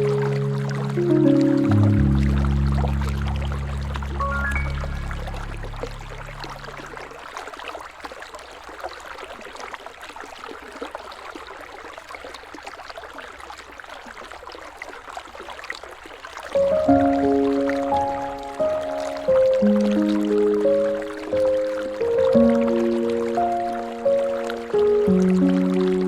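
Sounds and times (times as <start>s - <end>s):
soft music: 0.0s - 7.1s, 16.6s - 26.0s
river water flowing: 0.0s - 26.0s.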